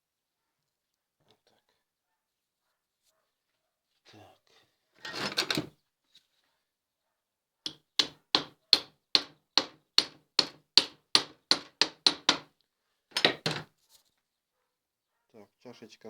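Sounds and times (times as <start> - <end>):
hammer tapping metal: 7.7 - 12.5, 13.1 - 13.6.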